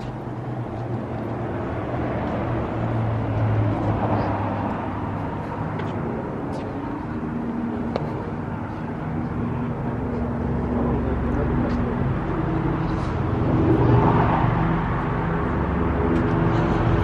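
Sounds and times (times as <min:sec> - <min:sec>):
traffic engine hum and road noise: 0:00.0 - 0:17.0.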